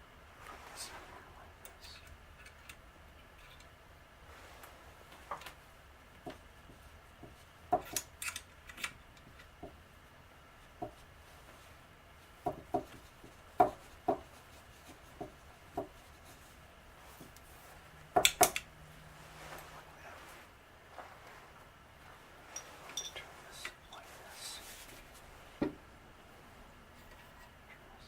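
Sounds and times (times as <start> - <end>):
clicks and knocks of rifle parts: 7.2 - 9.7, 18.2 - 18.7.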